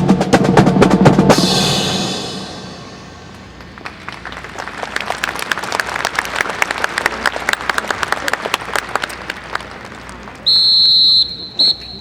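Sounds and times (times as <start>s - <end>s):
audience applauding: 3.3s - 10.5s.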